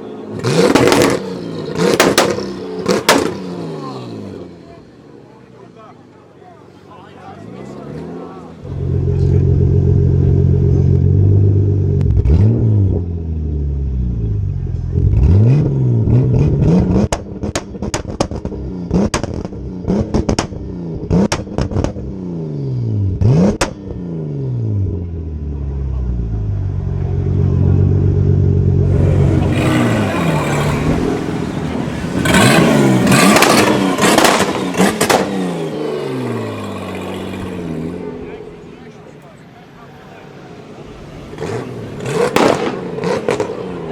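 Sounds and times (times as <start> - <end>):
car engine revving: 0.0 - 4.8, 7.3 - 43.9
exhaust pops and cracks: 17.1 - 20.6, 21.2 - 22.0.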